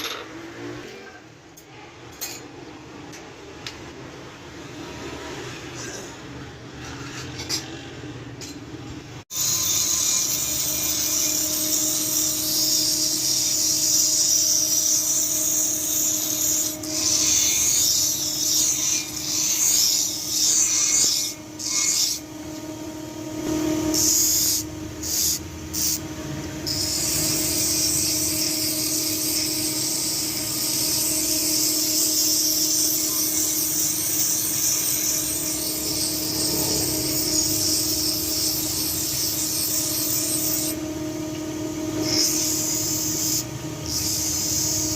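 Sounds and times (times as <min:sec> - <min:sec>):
steel grinding: 0:04.8 - 0:08.7, 0:09.3 - 0:44.9
motor hum: 0:20.2 - 0:44.9.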